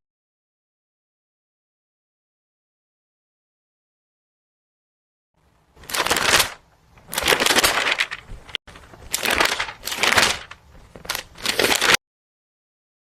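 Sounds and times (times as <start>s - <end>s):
crunching noise: 5.8s - 12.0s.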